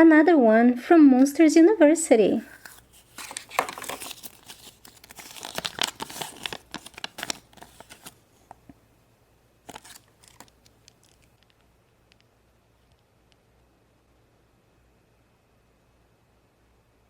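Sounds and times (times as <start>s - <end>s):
plastic wrapper crinkling and tearing: 2.5s - 8.2s, 9.6s - 11.6s.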